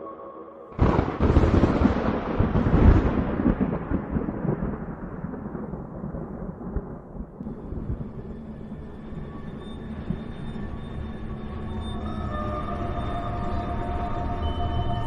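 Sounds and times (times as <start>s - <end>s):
thunder clap rumbling: 0.8s - 10.6s.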